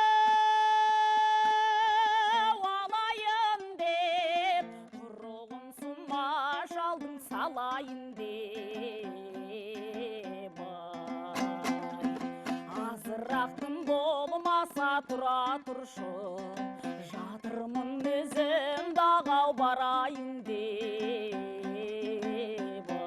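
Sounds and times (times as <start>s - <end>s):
person singing ornamented melody: 0.0s - 23.0s
fast strummed plucked strings: 6.1s - 23.0s.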